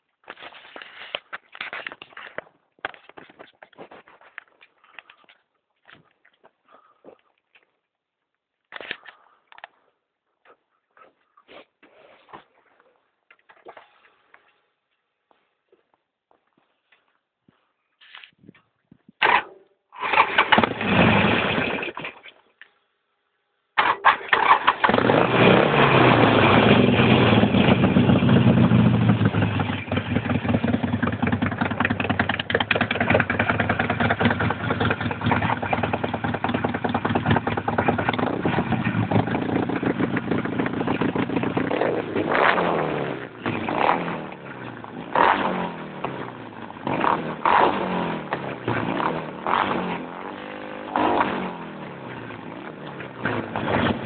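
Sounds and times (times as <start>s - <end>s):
motorcycle engine idling: 26.3s - 42.3s, 48.2s - 54.0s.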